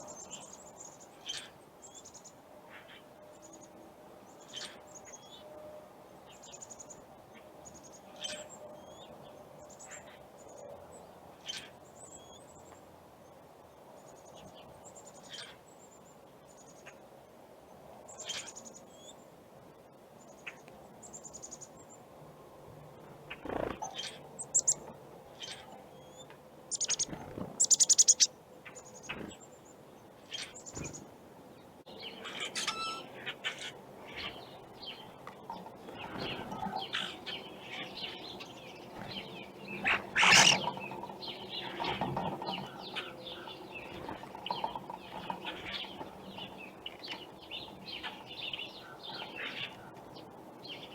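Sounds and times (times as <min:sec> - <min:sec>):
birds chirping: 0:23.0 - 0:50.9
wings flapping: 0:23.3 - 0:24.1, 0:26.8 - 0:28.2.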